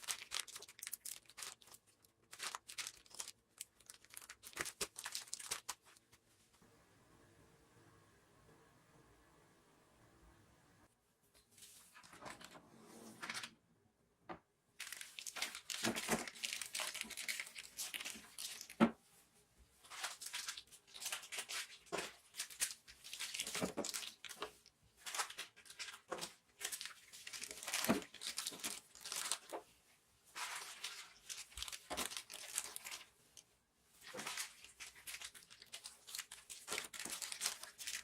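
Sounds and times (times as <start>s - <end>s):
plastic packaging crinkling: 0.0s - 6.2s, 14.8s - 18.8s, 19.8s - 29.7s, 30.4s - 38.0s.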